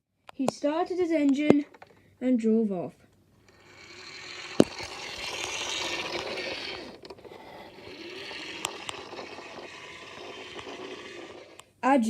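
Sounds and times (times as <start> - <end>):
sharp clicks: 3.4 - 11.7.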